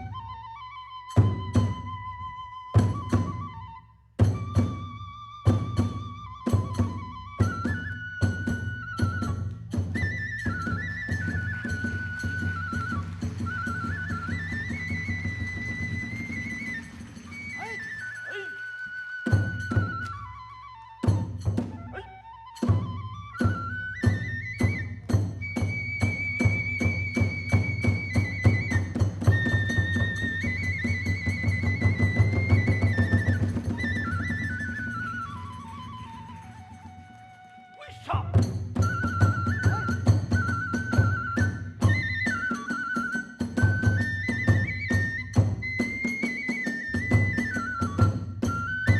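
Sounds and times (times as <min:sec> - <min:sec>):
bamboo flute melody: 0:00.0 - 0:48.9
taiko drums beating: 0:01.2 - 0:03.6, 0:04.2 - 0:36.4, 0:38.0 - 0:48.9
hand cymbals: 0:06.5 - 0:20.3
quick drum strokes: 0:09.1 - 0:20.1.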